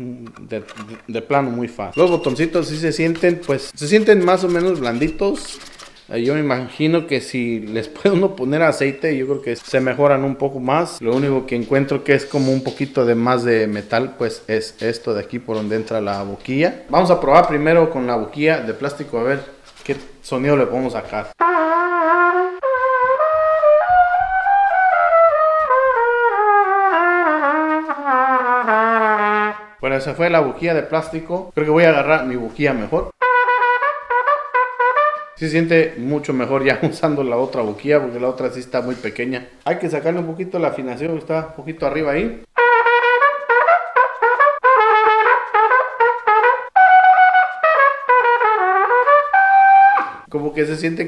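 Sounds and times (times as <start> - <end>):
plastic trumpet notes: 1.9 - 6.0, 21.4 - 29.8, 33.2 - 35.4, 42.6 - 50.3.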